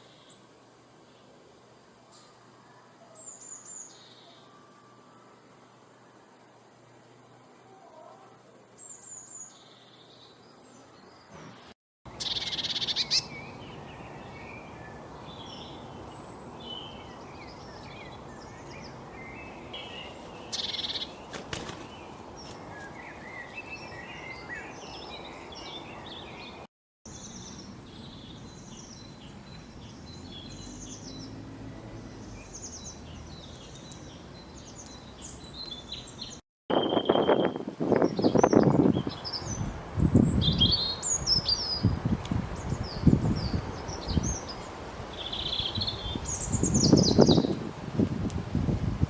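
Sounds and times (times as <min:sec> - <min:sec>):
birds chirping and singing: 0:12.1 - 0:41.9.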